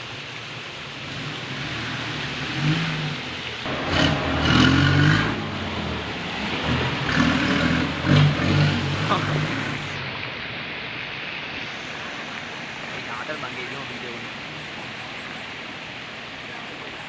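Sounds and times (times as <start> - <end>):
diesel engine revving: 0.9 - 10.0.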